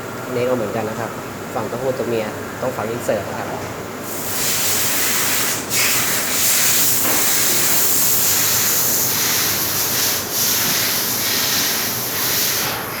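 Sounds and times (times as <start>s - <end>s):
machine hissing: 4.0s - 13.0s.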